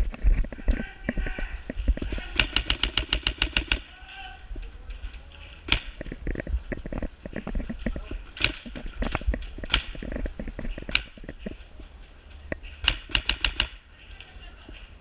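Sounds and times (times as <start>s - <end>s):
crunching footsteps: 0.0s - 15.0s
airsoft gunfire clacks: 2.1s - 3.9s, 8.4s - 10.2s, 12.8s - 13.8s.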